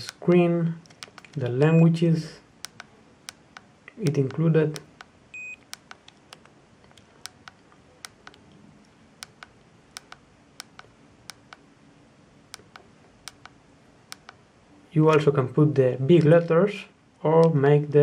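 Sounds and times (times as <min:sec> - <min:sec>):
phone keypad buttons clicking: 0:00.0 - 0:01.9, 0:02.6 - 0:08.5, 0:09.2 - 0:11.7, 0:12.6 - 0:14.4.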